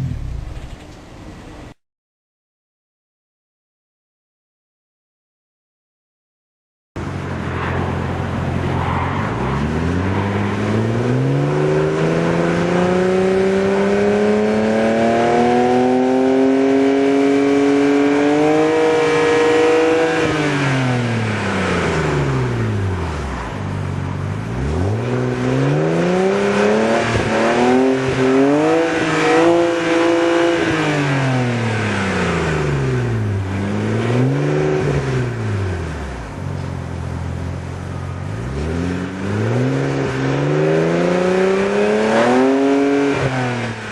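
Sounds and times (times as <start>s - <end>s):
car exhaust revving: 7.0s - 43.9s.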